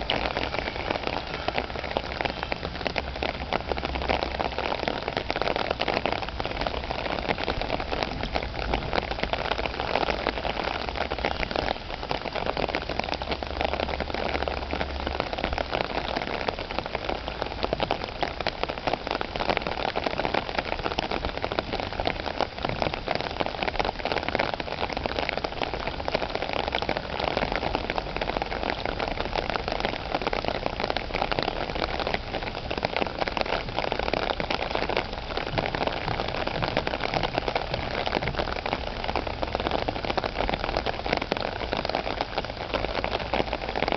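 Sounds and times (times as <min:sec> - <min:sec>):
rain falling: 0:00.0 - 0:43.9.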